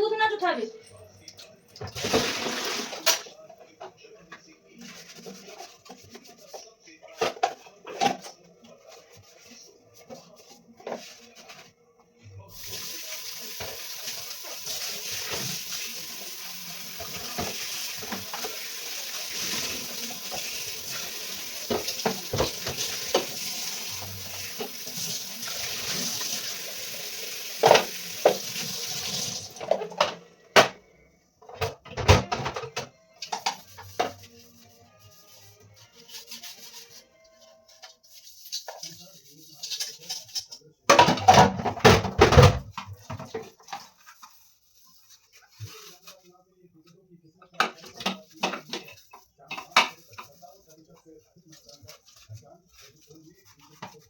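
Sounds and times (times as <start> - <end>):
dishes knocking and clattering: 7.1 - 8.4, 21.6 - 23.5, 27.6 - 28.5, 31.4 - 34.2, 40.1 - 44.0, 47.6 - 50.4.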